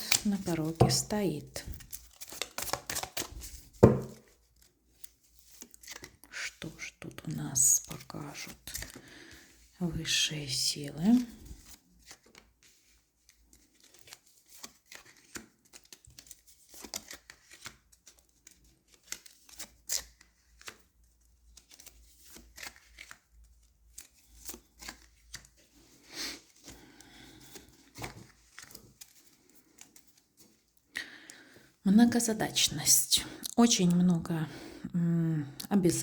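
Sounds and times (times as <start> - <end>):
cards rustling and sliding: 1.7 - 6.3, 11.2 - 30.7.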